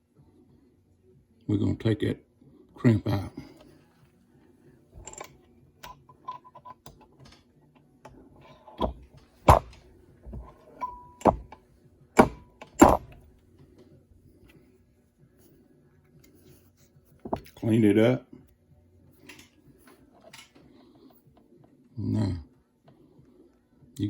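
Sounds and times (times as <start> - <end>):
metallic rings: 5.0 - 5.4, 10.4 - 11.5
tool clicks and clunks: 5.0 - 7.5, 8.4 - 11.6, 12.2 - 13.3, 17.3 - 17.6
loud knocks: 8.8 - 10.5, 12.2 - 13.2.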